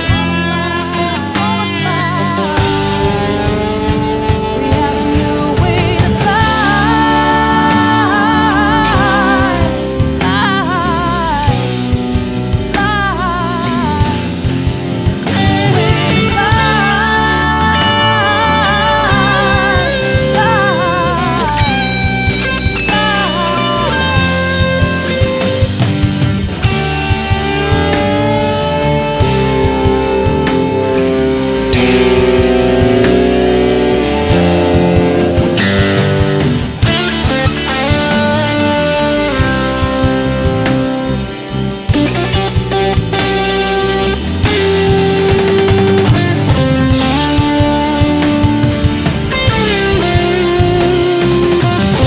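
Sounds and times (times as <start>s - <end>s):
person singing: 0.0s - 26.1s
guitar: 0.0s - 52.0s.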